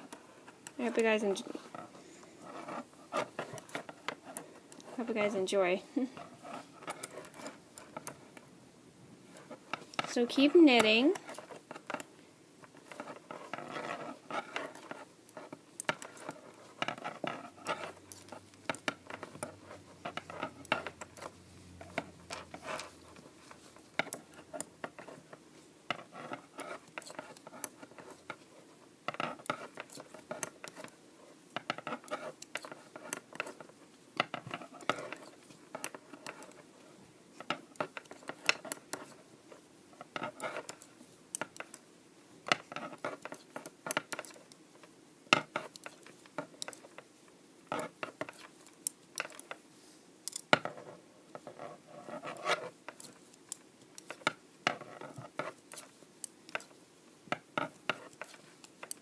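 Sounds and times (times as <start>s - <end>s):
knitting needles clicking: 12.7s - 25.2s, 31.6s - 36.6s, 37.4s - 39.2s, 40.0s - 41.8s, 42.4s - 44.6s, 45.3s - 47.1s, 47.7s - 49.6s, 50.3s - 50.6s, 52.4s - 59.0s.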